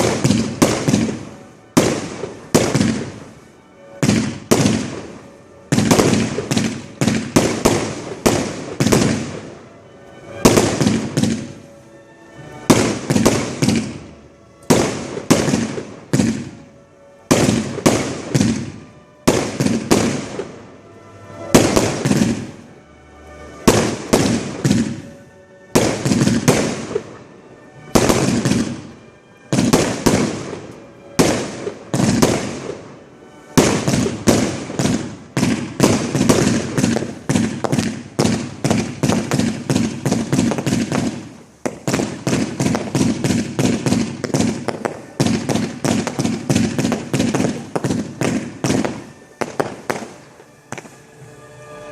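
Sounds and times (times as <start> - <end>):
firework launches and bursts: 0.0 - 3.3, 4.0 - 9.5, 33.5 - 51.2
rumble of fireworks: 0.0 - 51.9.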